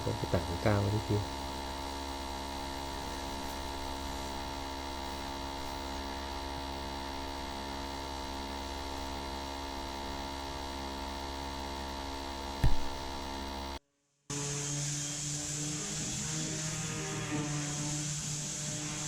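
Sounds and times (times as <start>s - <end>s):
electrical hum: 0.0s - 13.8s
low thump: 12.6s - 13.2s.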